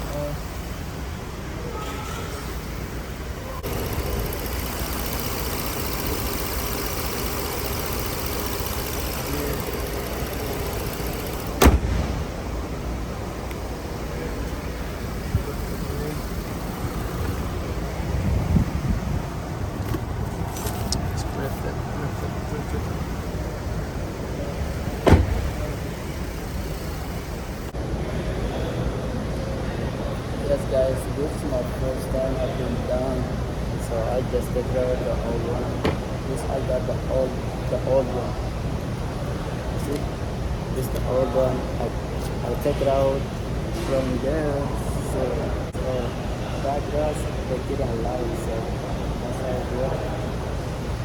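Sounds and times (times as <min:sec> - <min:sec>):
car engine idling: 0:03.5 - 0:18.1, 0:21.2 - 0:27.7
sharp knock: 0:11.6 - 0:12.3
sharp thump: 0:11.6 - 0:12.4, 0:25.0 - 0:25.7.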